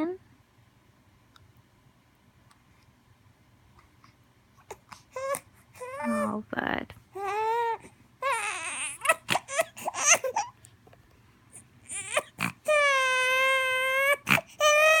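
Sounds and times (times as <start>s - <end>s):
baby crying: 5.2s - 6.3s, 7.2s - 10.5s, 11.8s - 15.0s.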